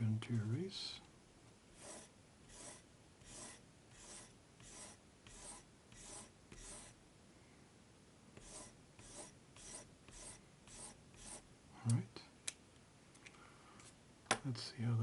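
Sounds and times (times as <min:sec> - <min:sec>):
pencil scratching on paper: 0:01.7 - 0:07.0, 0:08.4 - 0:11.5.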